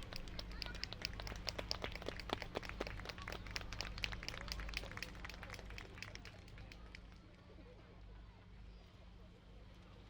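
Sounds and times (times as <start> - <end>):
crowd clapping: 0.0 - 6.9.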